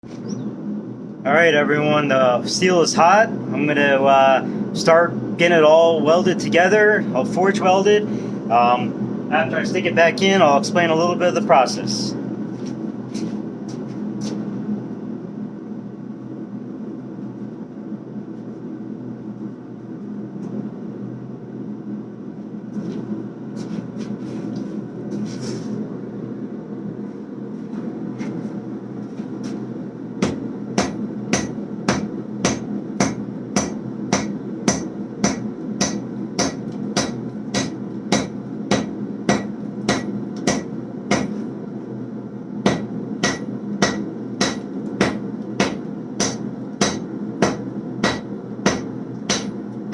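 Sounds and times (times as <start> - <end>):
hammer striking hot steel on anvil: 30.2 - 41.4, 42.6 - 49.6.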